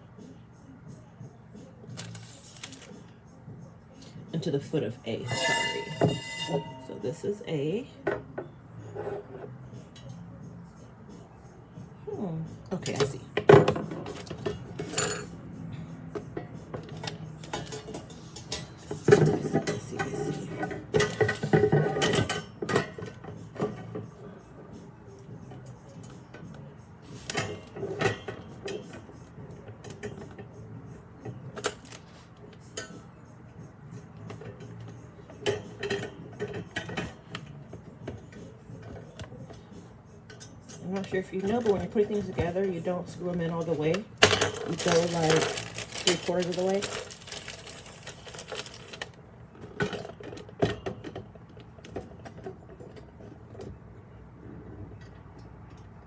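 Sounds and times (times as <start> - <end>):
metal parts clinking and knocking: 44.2 - 49.1.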